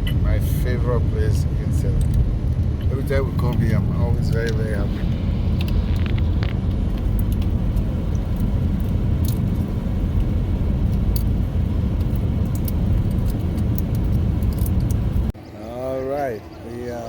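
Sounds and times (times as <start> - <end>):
car cabin rumble: 0.0 - 15.4
small clicks and rattles: 11.9 - 15.3.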